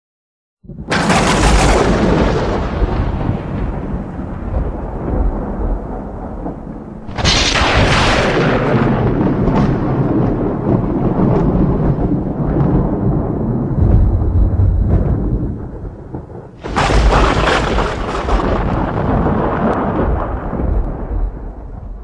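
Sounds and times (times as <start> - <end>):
sharp thunder crack: 0.6 - 22.0
thunder rumbling: 0.6 - 22.0.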